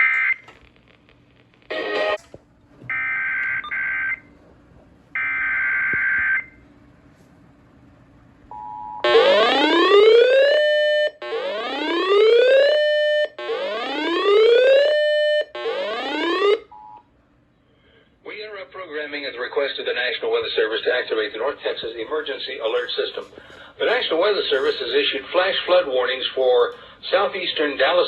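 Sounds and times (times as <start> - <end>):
electronic whooping alarm: 5.2 - 6.6, 8.6 - 17.0.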